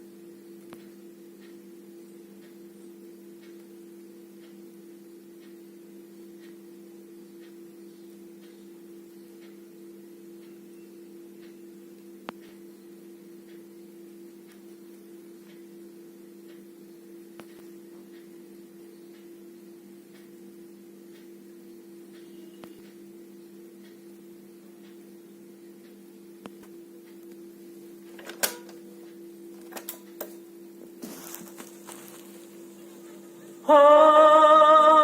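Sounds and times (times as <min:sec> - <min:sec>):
low electrical hum: 0:00.0 - 0:35.0
faint ticks: 0:02.4 - 0:04.6, 0:05.4 - 0:06.8, 0:07.4 - 0:09.7, 0:11.4 - 0:12.7, 0:20.1 - 0:20.4, 0:22.1 - 0:23.1.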